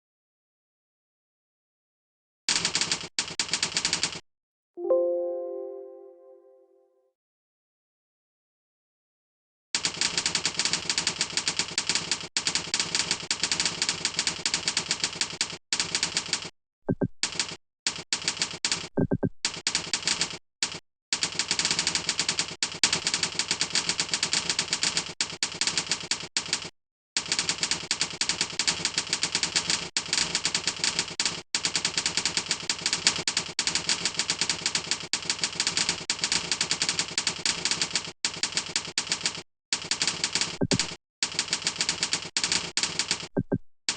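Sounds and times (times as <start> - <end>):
rapid typing on keyboard: 2.5 - 4.2, 9.8 - 16.5, 17.2 - 43.9.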